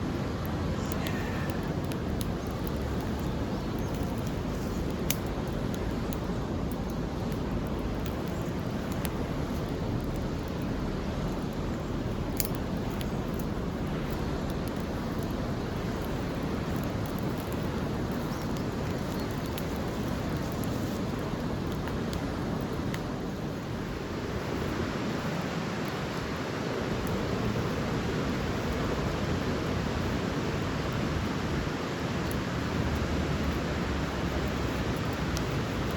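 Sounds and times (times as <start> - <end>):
steady outdoor rushing noise: 0.0 - 35.9
faint sharp clicks: 0.4 - 11.6, 12.2 - 23.1.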